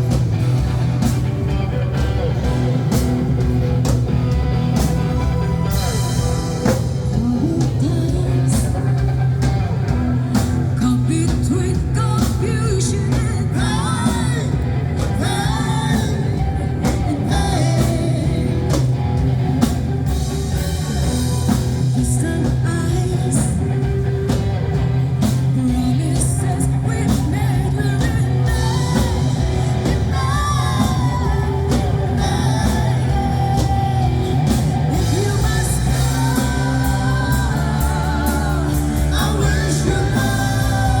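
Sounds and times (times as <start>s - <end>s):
drum kit beat: 0.0s - 41.0s
electric guitar: 0.0s - 41.0s
heavy bass: 0.0s - 41.0s
live pop-rock band playing: 0.0s - 41.0s
person singing: 5.7s - 19.0s, 21.1s - 24.4s, 25.2s - 41.0s.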